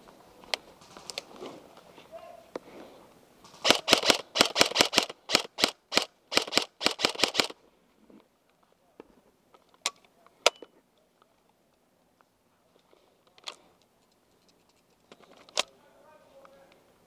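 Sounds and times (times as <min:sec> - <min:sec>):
airsoft gun shots: 0:03.5 - 0:07.5.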